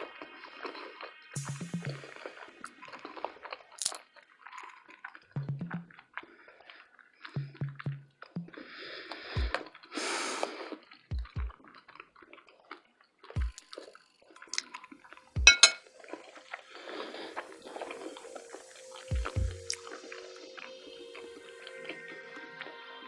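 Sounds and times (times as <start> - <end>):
wet mouth eating noises: 0.1 - 15.5, 16.1 - 21.3
soft low thumps: 5.4 - 5.9, 7.4 - 8.6, 11.1 - 11.6
sharp clink: 15.5 - 15.8.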